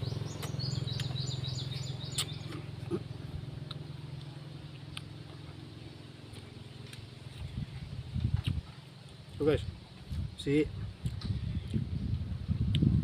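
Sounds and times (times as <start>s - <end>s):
bird chirping: 0.0s - 4.2s
low engine drone: 0.0s - 10.0s.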